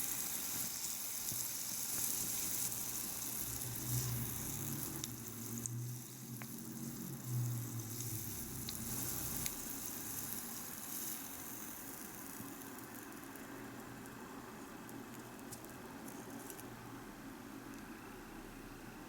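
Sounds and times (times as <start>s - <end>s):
hot oil sizzling: 0.0s - 14.2s.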